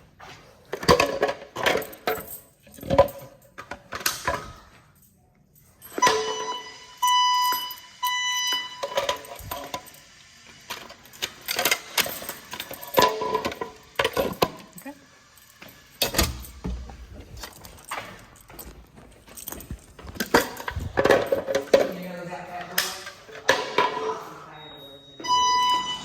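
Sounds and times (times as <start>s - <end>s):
handling clicks and clatter: 0.7s - 4.8s, 10.7s - 23.9s
fire alarm tones: 5.8s - 10.4s, 24.0s - 26.0s.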